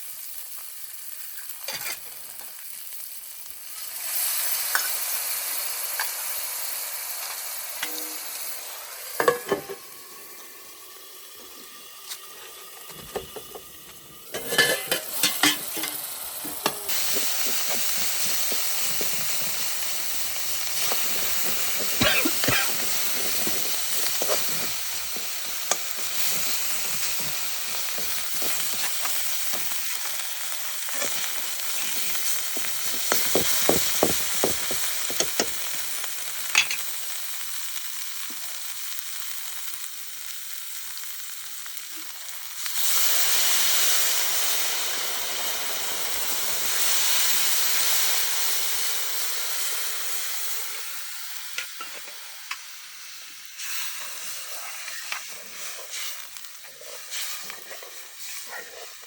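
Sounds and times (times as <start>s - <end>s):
food sizzling in hot oil: 0.0s - 59.0s
utensil clicking against pan: 32.1s - 35.7s.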